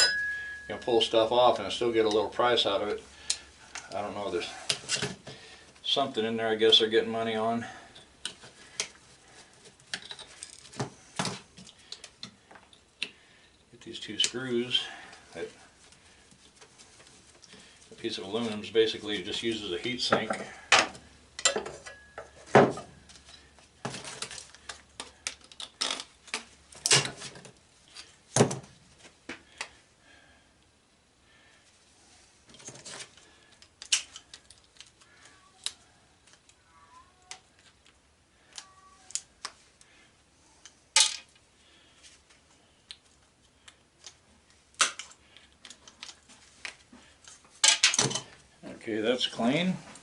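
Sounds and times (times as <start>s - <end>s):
hand tools and metal parts clinking: 0.0s - 2.2s, 7.9s - 12.8s, 16.4s - 28.2s, 44.8s - 48.4s.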